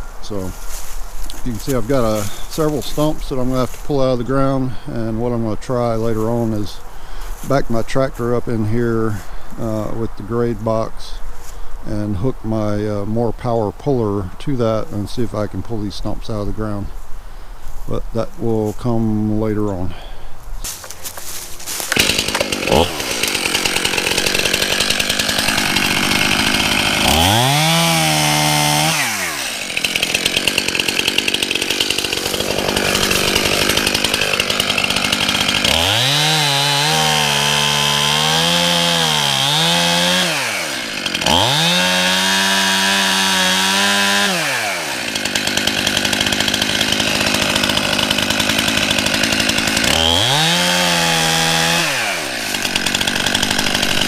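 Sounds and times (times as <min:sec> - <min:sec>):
chainsaw cutting wood: 0:00.3 - 0:04.6, 0:20.6 - 0:54.0.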